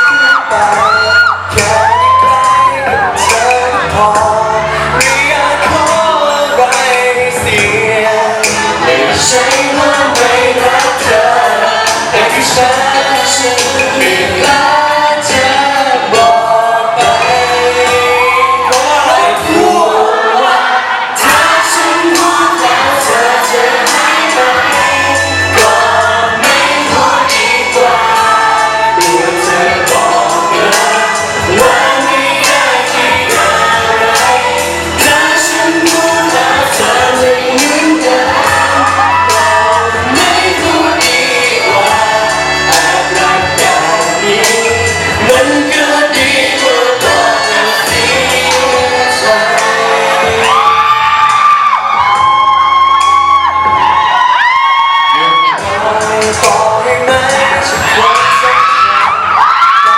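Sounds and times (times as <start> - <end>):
crowd shouts: 0.0 - 6.4, 16.1 - 59.9
pop song over sound system: 0.0 - 59.9.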